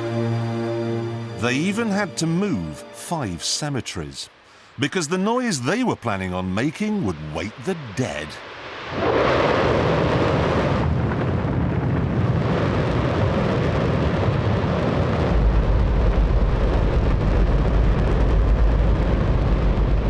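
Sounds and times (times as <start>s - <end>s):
rocket engine roaring: 7.0s - 20.0s.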